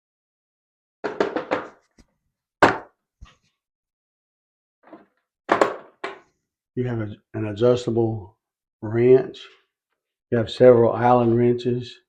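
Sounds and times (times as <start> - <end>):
sharp knocks: 2.6 - 2.9.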